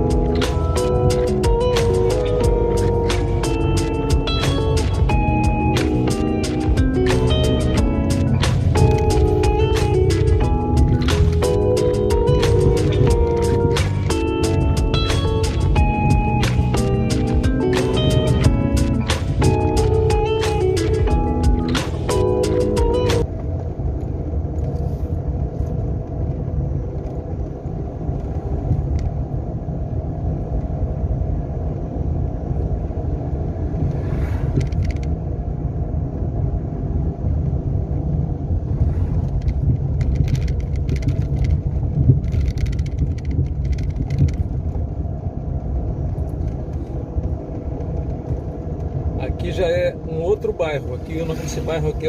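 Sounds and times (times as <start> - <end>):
car engine and road rumble: 0.0 - 52.0
clicks and rattles: 39.2 - 44.8.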